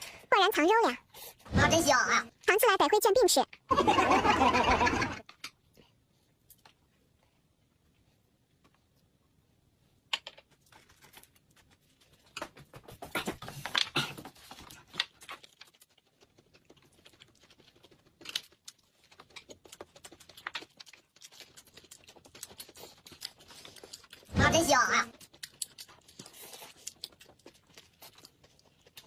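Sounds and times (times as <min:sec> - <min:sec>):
food wrapper crinkling and rustling: 0:10.2 - 0:12.4, 0:13.5 - 0:24.3, 0:25.1 - 0:29.0
eating sounds: 0:13.1 - 0:29.0.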